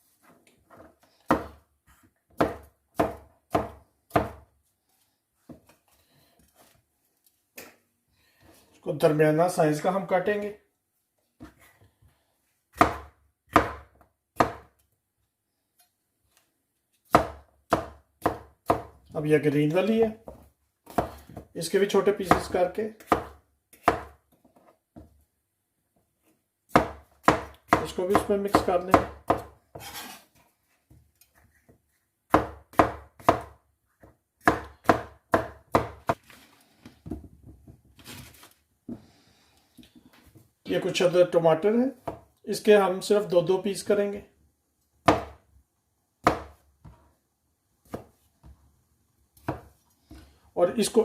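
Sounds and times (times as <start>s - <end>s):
knife chopping on cutting board: 1.3s - 1.6s, 2.3s - 4.4s, 12.7s - 14.7s, 17.1s - 19.0s, 22.2s - 24.2s, 26.7s - 30.2s, 32.3s - 36.2s, 45.0s - 45.4s, 46.2s - 47.0s, 49.4s - 49.7s.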